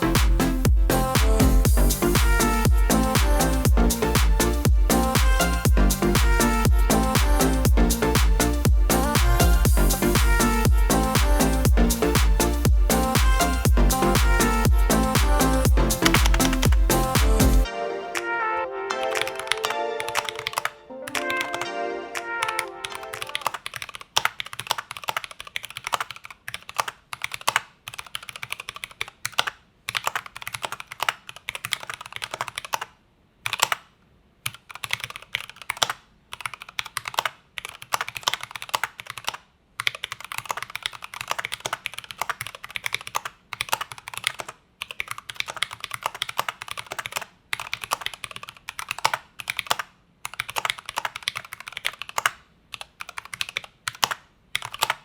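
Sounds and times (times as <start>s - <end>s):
mechanical keyboard typing: 15.1s - 17.6s, 19.1s - 21.7s, 22.4s - 55.0s.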